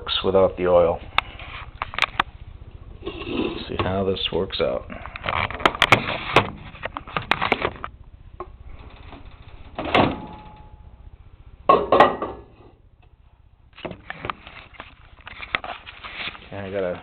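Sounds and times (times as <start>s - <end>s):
microwave door clunks: 9.8s - 10.5s.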